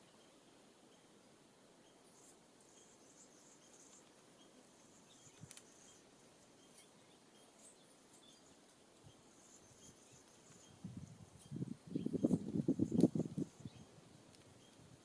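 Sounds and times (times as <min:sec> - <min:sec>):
thin high hiss: 0:01.8 - 0:13.9
faint clicks: 0:05.3 - 0:05.8, 0:14.3 - 0:14.8.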